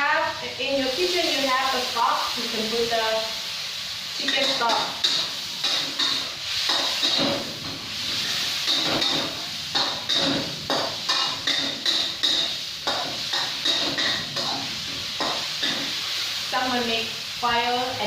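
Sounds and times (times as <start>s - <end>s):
chicken sizzling in a pan: 0.0s - 18.0s
spatula scraping a pan: 4.2s - 16.2s.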